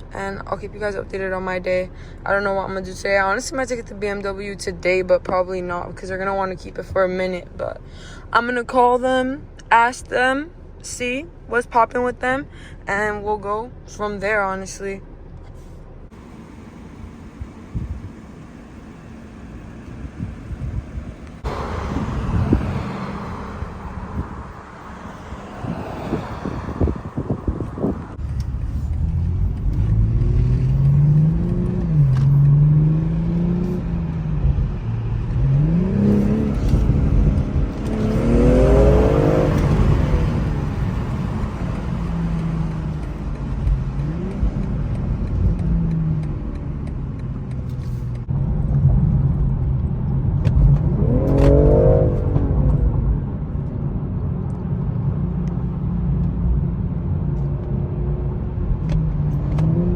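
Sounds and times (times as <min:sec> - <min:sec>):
car engine accelerating through gears: 0:15.6 - 0:59.9.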